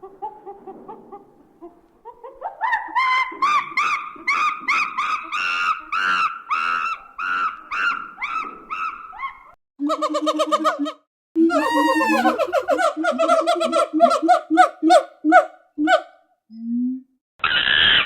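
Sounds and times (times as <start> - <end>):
monkey hooting and screeching: 2.6 - 16.0.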